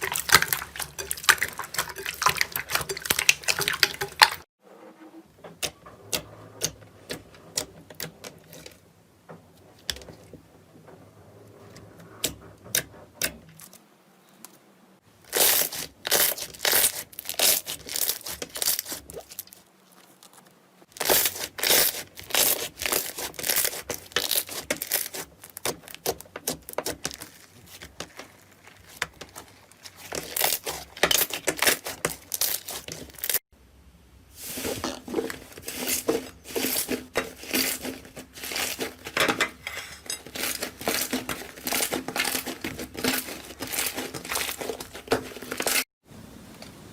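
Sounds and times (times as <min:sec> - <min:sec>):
slime crackling and popping: 0:15.3 - 0:33.4, 0:40.3 - 0:45.8.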